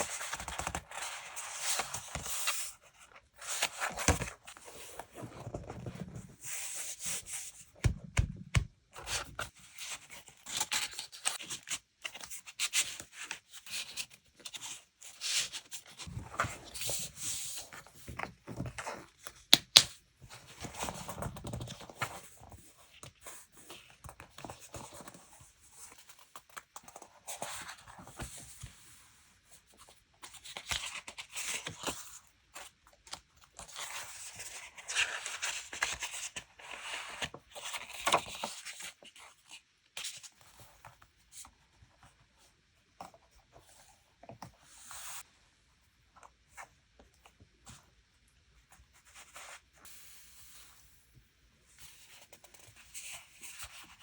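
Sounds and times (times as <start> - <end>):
paper rustling and crinkling: 0.0 - 19.2.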